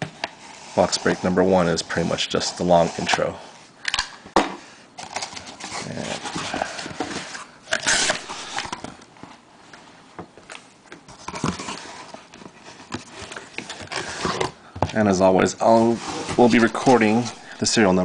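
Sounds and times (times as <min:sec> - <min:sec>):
cardboard and plastic packaging rustling: 0:05.0 - 0:18.0.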